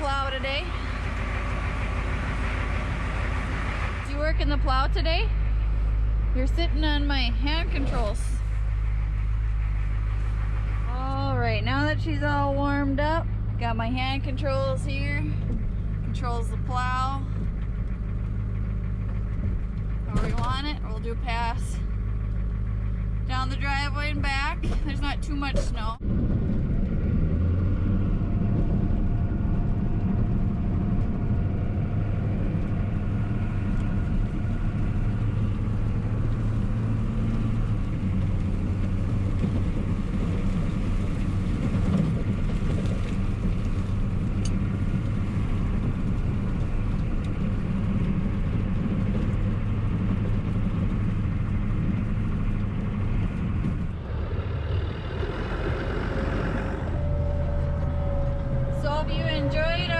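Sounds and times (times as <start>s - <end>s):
truck engine running: 0.0s - 59.9s.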